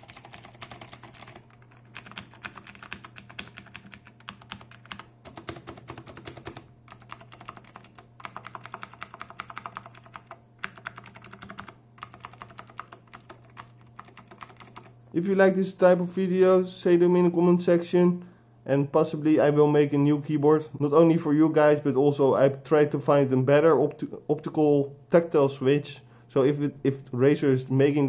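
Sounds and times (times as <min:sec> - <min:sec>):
mechanical keyboard typing: 0:00.0 - 0:14.9.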